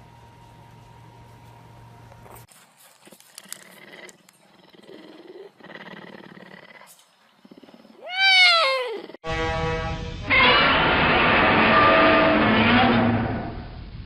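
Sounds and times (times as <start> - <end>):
cat meowing: 8.0 - 9.2.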